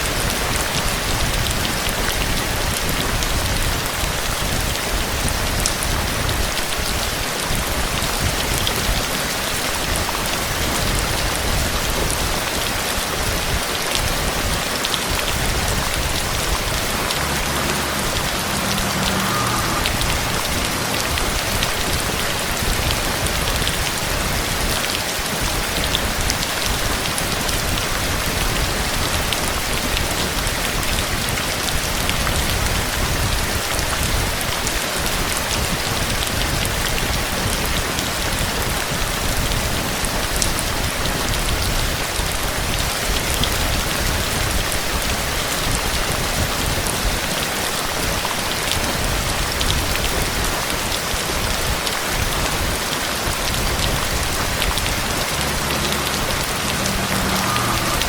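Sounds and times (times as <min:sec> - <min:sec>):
heavy rain hissing: 0:00.0 - 0:58.0
raindrops pattering on surfaces: 0:00.0 - 0:58.0
low rumble: 0:14.9 - 0:24.8.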